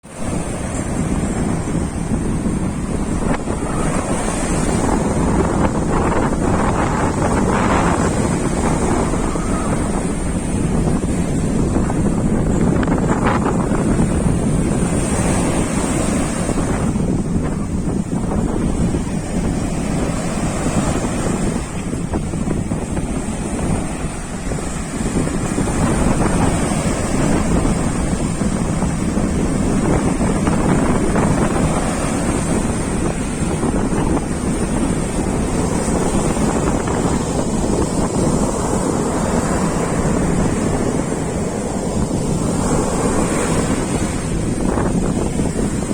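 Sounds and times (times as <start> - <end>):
surf washing in: 0.0 - 45.9
wind buffeting microphone: 0.0 - 45.9.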